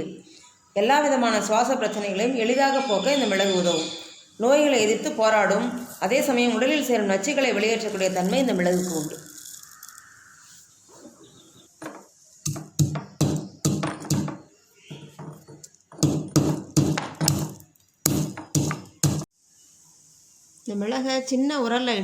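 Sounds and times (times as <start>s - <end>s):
pestle pounding in mortar: 12.4s - 14.5s, 16.0s - 19.3s.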